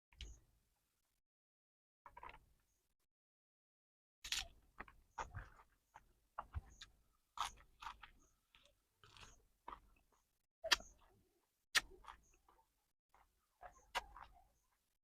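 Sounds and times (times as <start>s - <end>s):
person chewing: 7.4s - 9.8s.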